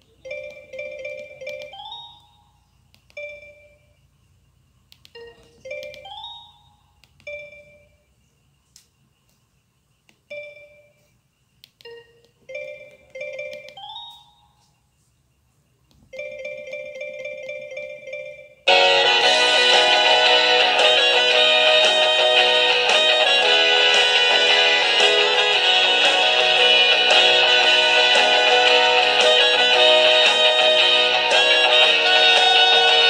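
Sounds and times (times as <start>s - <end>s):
phone ringtone melody: 0.1s - 4.0s, 5.2s - 8.0s, 11.9s - 14.7s, 16.1s - 33.0s.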